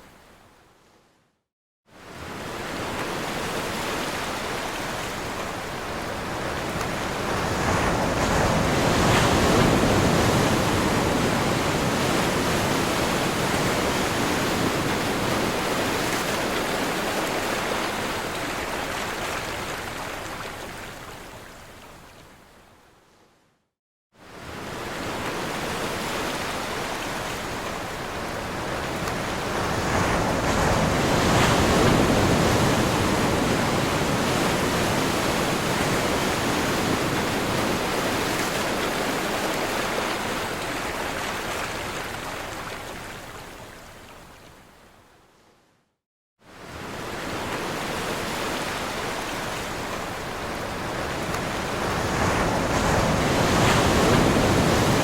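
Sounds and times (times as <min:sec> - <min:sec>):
ocean surf crashing: 0:02.4 - 0:18.5, 0:24.6 - 0:42.5, 0:46.6 - 0:55.0.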